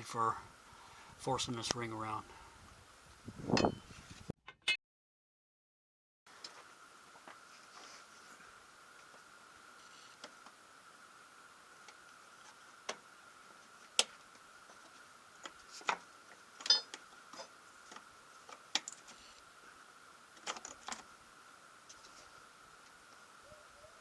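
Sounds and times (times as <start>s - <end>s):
small parts and tools clicking: 16.6s - 19.5s, 20.4s - 21.1s.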